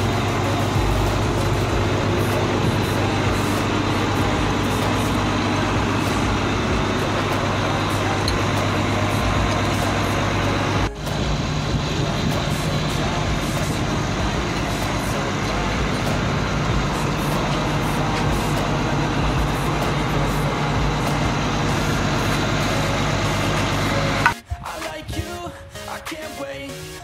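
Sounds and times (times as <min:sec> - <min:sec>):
diesel engine running: 0:00.0 - 0:24.4.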